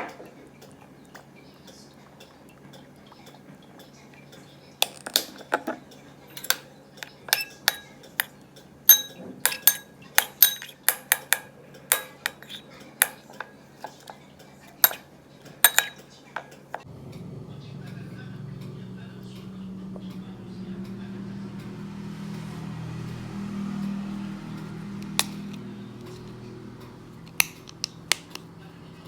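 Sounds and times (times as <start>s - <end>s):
metal utensil clinking on dish: 4.4s - 16.8s.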